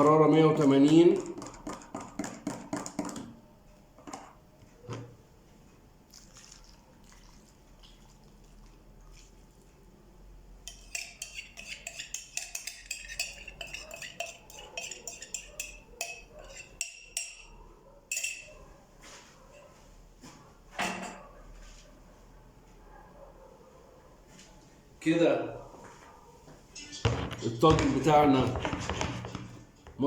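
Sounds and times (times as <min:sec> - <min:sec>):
dishes and utensils clattering: 0:10.7 - 0:18.6, 0:20.8 - 0:21.3, 0:26.8 - 0:29.6.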